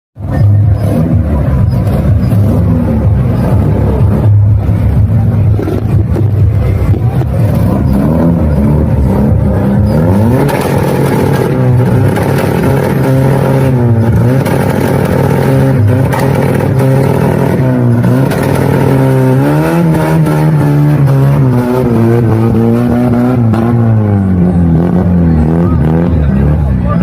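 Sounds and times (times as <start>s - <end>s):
car engine revving: 0.2s - 27.0s.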